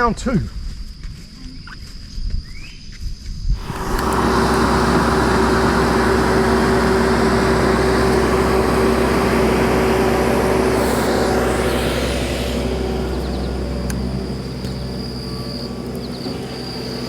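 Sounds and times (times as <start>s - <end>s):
diesel engine running: 3.6s - 17.0s.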